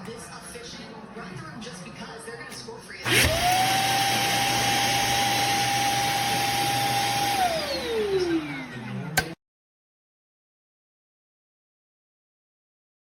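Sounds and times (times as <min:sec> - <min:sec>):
stick vacuum whining: 0:03.0 - 0:09.4.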